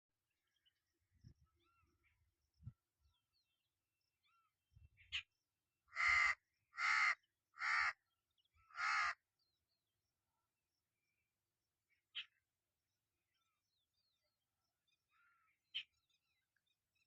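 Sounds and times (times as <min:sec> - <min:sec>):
faint bird chirp: 0:00.2 - 0:05.7, 0:08.1 - 0:17.0
crow cawing: 0:05.9 - 0:08.0, 0:08.6 - 0:09.2.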